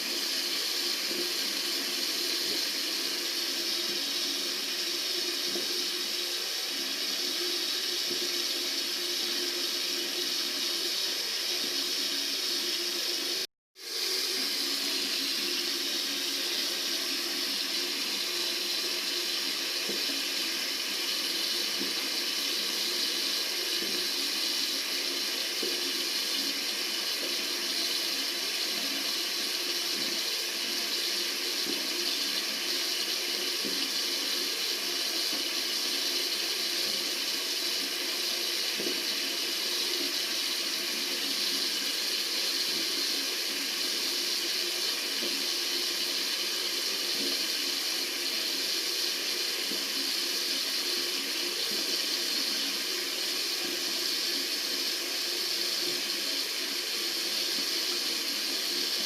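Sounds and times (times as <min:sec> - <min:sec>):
water running from a tap: 0:00.0 - 0:59.0.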